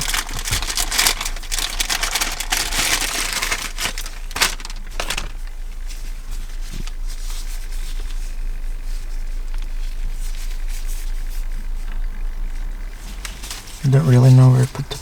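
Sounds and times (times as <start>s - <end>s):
plastic and wiring crinkling: 0.0s - 7.1s.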